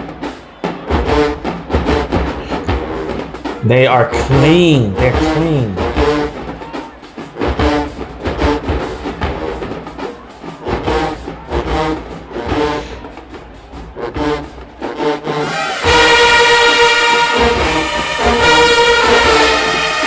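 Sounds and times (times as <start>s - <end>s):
drums: 0.0s - 20.0s
marching band brass phrases: 0.0s - 20.0s
loud held brass chord: 15.2s - 20.0s.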